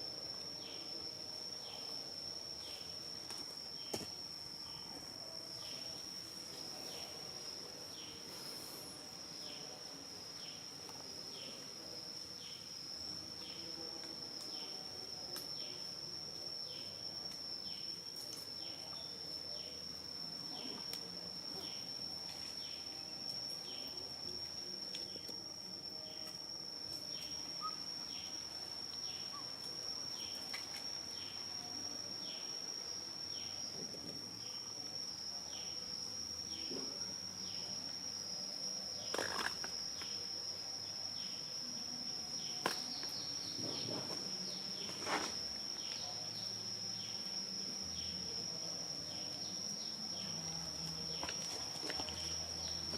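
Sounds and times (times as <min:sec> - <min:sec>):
insects droning: 0:00.0 - 0:52.9
short falling insect chirp: 0:39.0 - 0:40.2.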